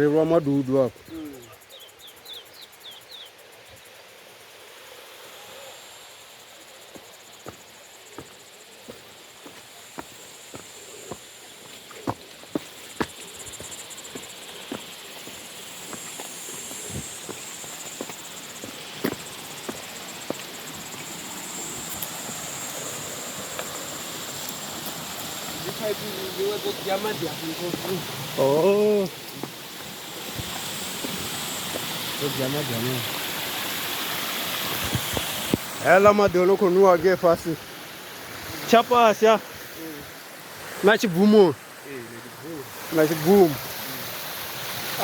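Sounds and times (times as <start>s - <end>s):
insects trilling: 0.0s - 45.0s
bird chirping: 1.0s - 3.9s
footsteps on a trail: 6.8s - 25.9s, 27.5s - 28.1s, 29.2s - 32.2s, 34.4s - 36.4s.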